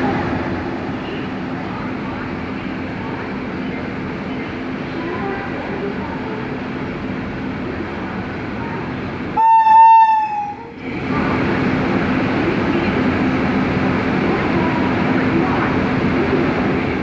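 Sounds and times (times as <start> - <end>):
electric locomotive humming: 0.0 - 17.0
shrill locomotive horn: 9.4 - 10.6.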